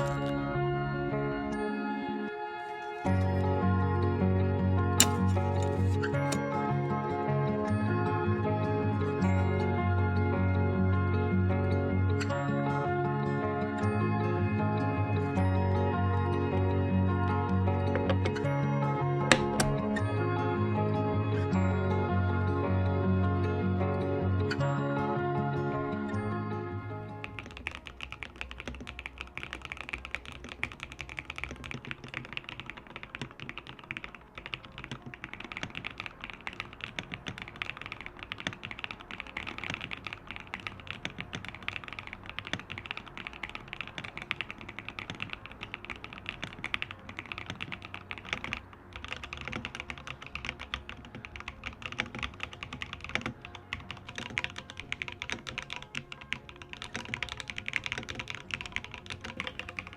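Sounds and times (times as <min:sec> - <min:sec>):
mechanical keyboard typing: 0:00.0 - 0:00.4, 0:02.6 - 0:03.5, 0:05.0 - 0:06.6, 0:19.3 - 0:20.0, 0:27.2 - 0:59.9.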